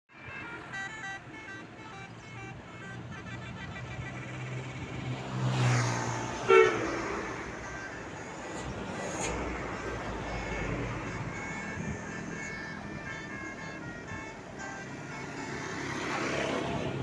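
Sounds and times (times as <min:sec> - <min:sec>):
bus engine passing: 0:00.1 - 0:17.0
bus horn playing melody: 0:00.1 - 0:17.0
loud horn note: 0:06.5 - 0:07.4.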